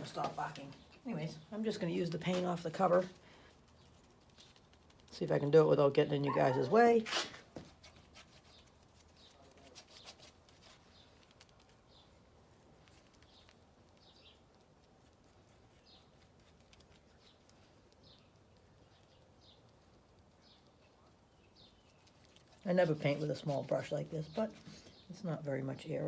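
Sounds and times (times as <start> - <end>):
high-pitched animal calls: 6.3 - 7.0.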